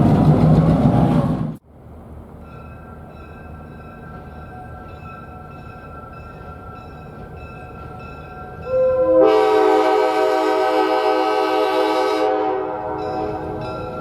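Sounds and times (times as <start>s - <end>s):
locomotive air horn blast: 8.7s - 13.6s.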